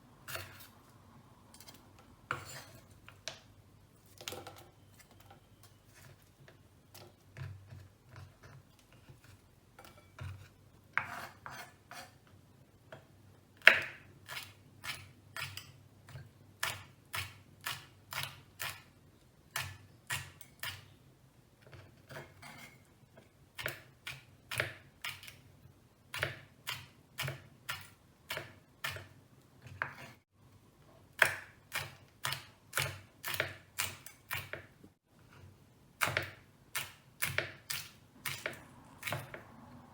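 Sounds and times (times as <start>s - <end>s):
knife chopping on cutting board: 9.9s - 12.2s, 26.1s - 29.1s, 31.2s - 34.7s, 36.0s - 39.5s.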